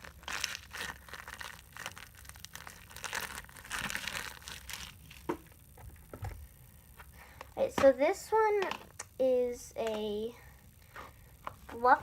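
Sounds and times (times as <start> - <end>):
plastic bag crinkling: 0.0 - 6.4.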